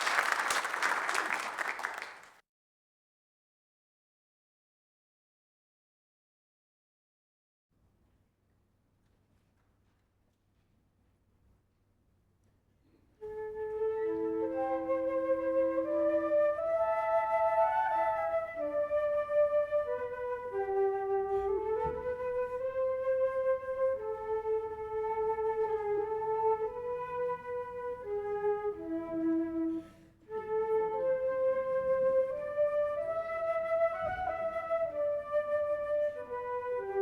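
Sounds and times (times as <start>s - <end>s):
flute playing slow melody: 13.2s - 37.0s.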